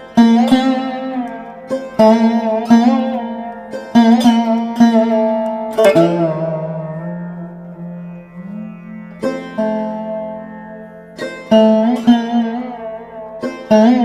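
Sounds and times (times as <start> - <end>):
plucked string instrument melody: 0.0 - 14.0
steady drone: 5.7 - 13.1.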